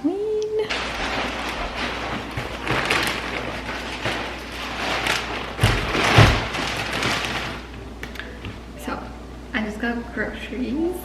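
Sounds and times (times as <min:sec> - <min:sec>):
rustling and handling noise: 0:00.6 - 0:08.8
heavy thumps: 0:00.7 - 0:07.7.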